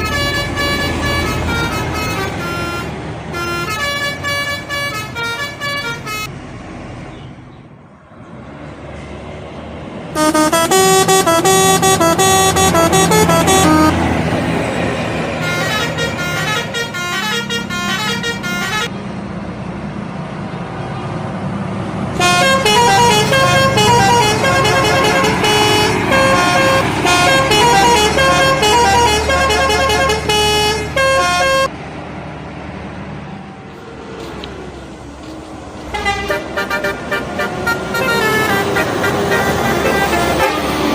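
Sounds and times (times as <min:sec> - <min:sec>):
multi-tone musical bus horn: 0:00.0 - 0:06.3, 0:10.2 - 0:14.4, 0:15.2 - 0:19.0, 0:22.2 - 0:31.7, 0:35.9 - 0:40.9
bus engine and road noise: 0:00.0 - 0:40.9.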